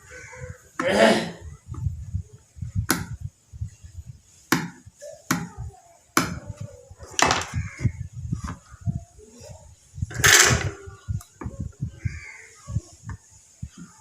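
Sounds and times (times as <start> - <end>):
low rumbling handling noise: 9.6 - 14.0.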